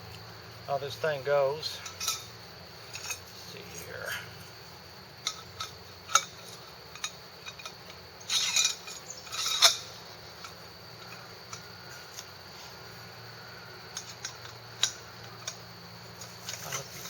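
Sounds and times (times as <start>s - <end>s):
scraping clatters: 1.7s - 3.9s, 5.2s - 12.3s
metal saw parts clinking: 5.2s - 10.6s.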